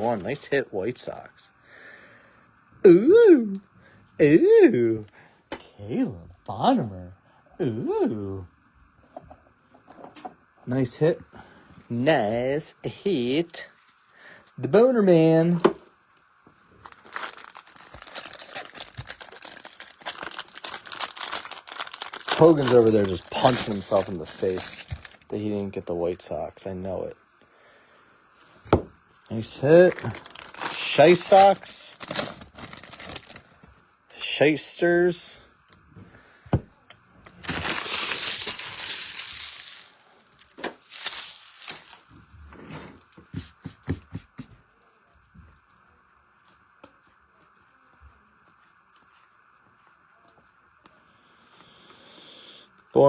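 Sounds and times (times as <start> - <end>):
rustles and clicks of handling: 16.5 - 25.3, 28.4 - 33.9, 35.7 - 44.4
foil wrapper crinkling: 16.8 - 25.3, 29.4 - 33.6, 37.3 - 42.2.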